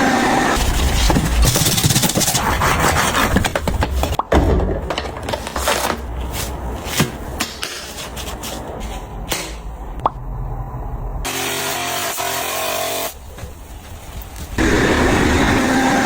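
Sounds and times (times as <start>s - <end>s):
scraping and rubbing: 0.6s - 4.2s, 5.0s - 9.3s.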